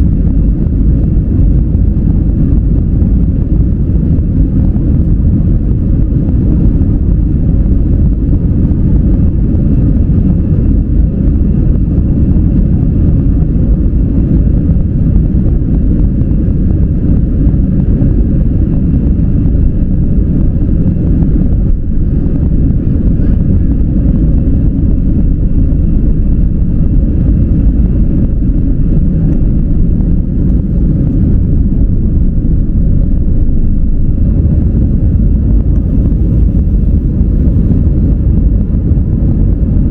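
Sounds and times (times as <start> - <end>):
airliner engines rumbling in cabin: 0.0 - 39.9
faint high whine: 11.8 - 39.9.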